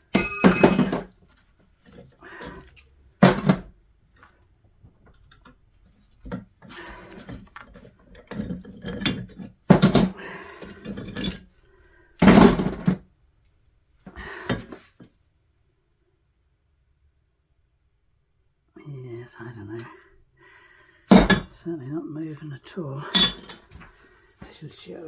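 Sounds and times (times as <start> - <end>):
metal tools clanking and scraping: 0.2 - 1.1, 8.2 - 11.4, 23.0 - 23.9.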